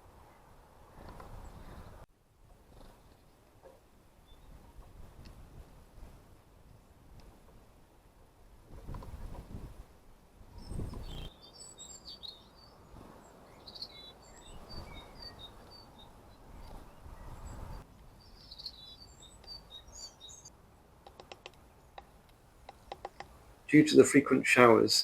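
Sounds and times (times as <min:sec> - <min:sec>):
small birds chirping: 0:04.2 - 0:04.8, 0:10.5 - 0:24.0.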